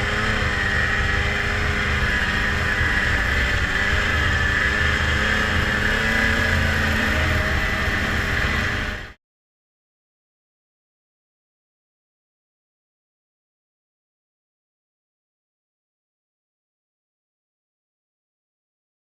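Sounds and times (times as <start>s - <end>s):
two-stroke snowmobile engine running: 0.0s - 9.2s.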